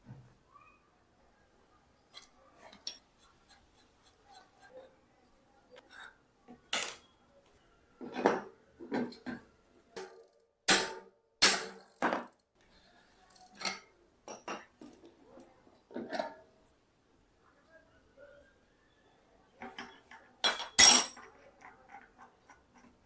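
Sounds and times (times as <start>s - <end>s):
metal tools clinking: 20.5s - 21.2s.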